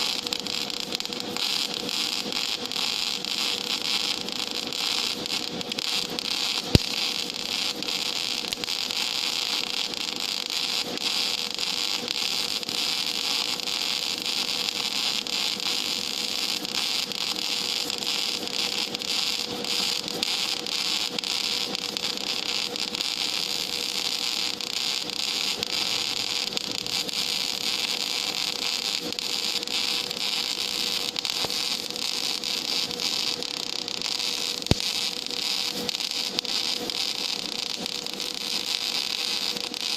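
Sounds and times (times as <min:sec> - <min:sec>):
welding arc crackling sizzle: 0:00.0 - 0:39.9
sharp crack: 0:06.7 - 0:07.0.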